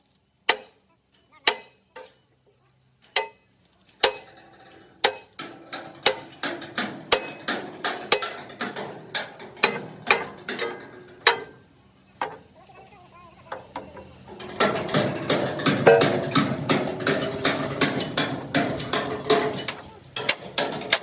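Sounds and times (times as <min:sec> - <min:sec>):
hammer blows on sheet metal: 0:14.4 - 0:21.0.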